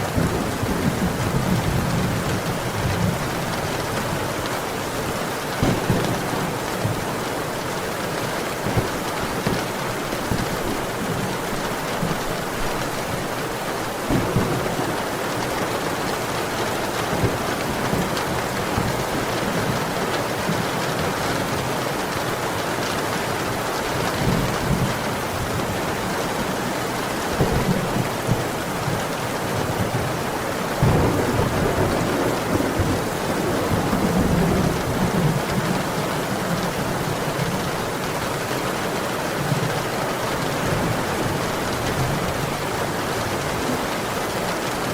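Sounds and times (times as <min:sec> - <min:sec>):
heavy rain: 0:00.0 - 0:44.9
low thunder rumbles: 0:05.6 - 0:07.3, 0:14.0 - 0:15.9, 0:30.8 - 0:37.3.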